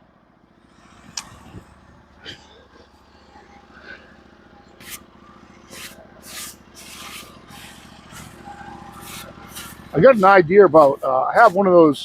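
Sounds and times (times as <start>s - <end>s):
steady low hum: 0.0s - 12.0s
brush sweeping sawdust: 3.7s - 12.0s.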